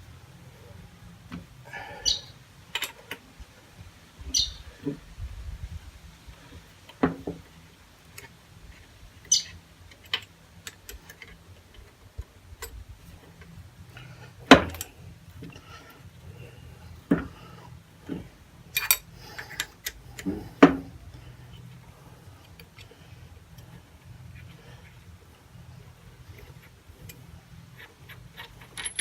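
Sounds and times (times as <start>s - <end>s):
knocks and clinks of tools: 28.4s - 29.0s.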